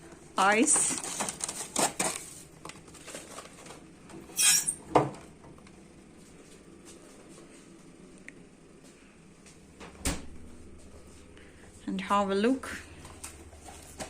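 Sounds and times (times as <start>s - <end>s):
plastic bag rustling: 0.6s - 4.1s
packaging crinkle: 0.7s - 3.9s.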